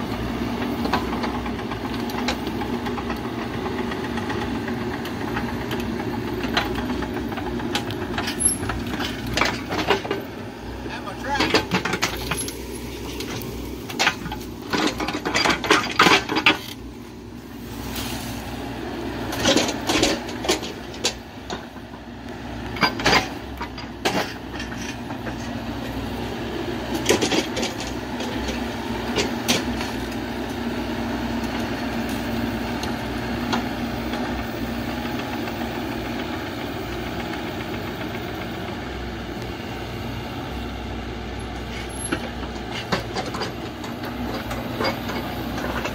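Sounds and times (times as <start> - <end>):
diesel engine running: 0.0 - 45.9
metallic clanks and knocks: 3.8 - 10.4, 11.0 - 12.6, 13.2 - 16.8, 19.3 - 21.8, 22.7 - 25.5, 41.6 - 45.9.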